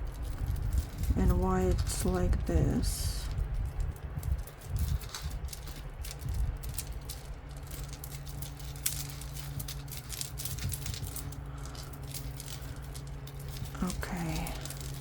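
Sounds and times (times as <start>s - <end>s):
beads and metal pieces clicking: 0.0s - 15.0s
low hum: 0.0s - 15.0s.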